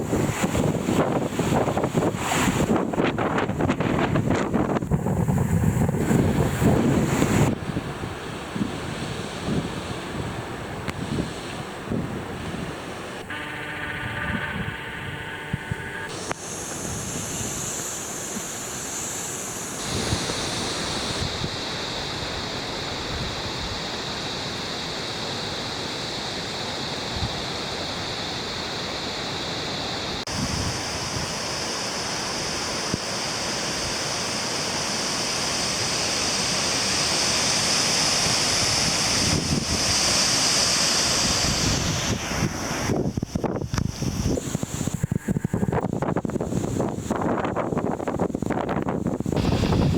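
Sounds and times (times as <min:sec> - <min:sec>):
wind buffeting microphone: 0:00.0 - 0:17.9, 0:19.8 - 0:21.6, 0:30.2 - 0:31.4, 0:38.1 - 0:49.9.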